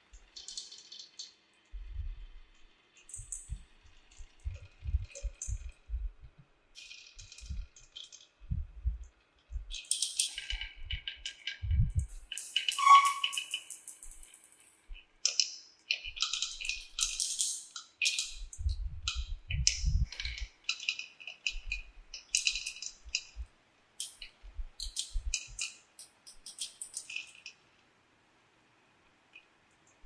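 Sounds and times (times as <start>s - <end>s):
dull low thumps: 1.8s - 2.4s, 3.2s - 6.5s, 7.4s - 7.7s, 8.4s - 9.8s, 11.6s - 12.2s, 18.5s - 20.4s, 24.5s - 25.3s
marbles clicking and rattling: 15.3s - 23.3s.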